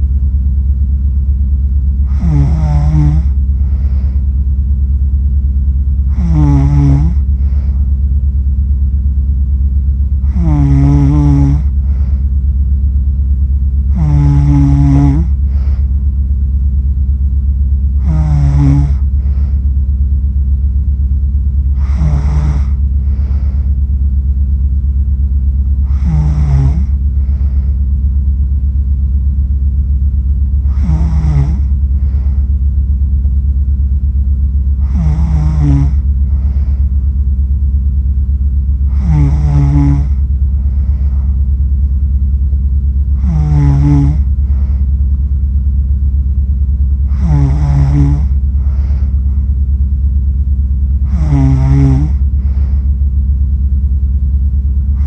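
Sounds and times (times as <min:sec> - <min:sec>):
loud steady low hum: 0:00.0 - 0:55.0
person snoring: 0:02.0 - 0:04.2, 0:06.1 - 0:07.9, 0:10.2 - 0:12.2, 0:13.9 - 0:15.9, 0:18.0 - 0:19.7, 0:21.7 - 0:23.8, 0:25.8 - 0:27.8, 0:30.6 - 0:32.5, 0:34.8 - 0:37.0, 0:38.9 - 0:41.4, 0:43.2 - 0:44.9, 0:47.1 - 0:49.5, 0:51.0 - 0:52.9.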